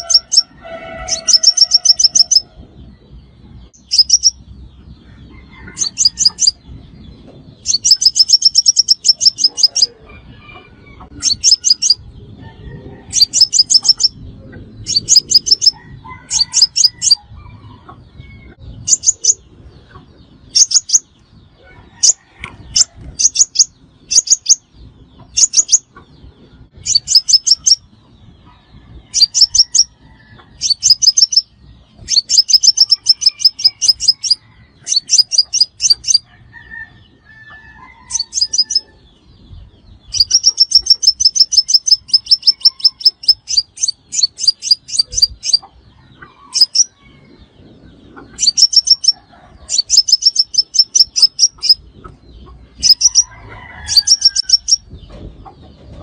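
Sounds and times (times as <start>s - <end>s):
bird high-pitched ticking song: 0.0s - 12.2s, 13.1s - 36.4s, 37.9s - 56.0s.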